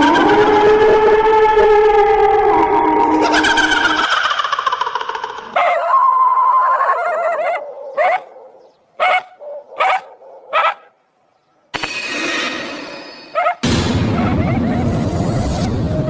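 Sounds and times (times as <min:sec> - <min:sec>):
falling wail: 0:00.0 - 0:07.4
whimpering yelps: 0:03.1 - 0:08.3, 0:13.4 - 0:13.6
animal whining: 0:05.5 - 0:08.2.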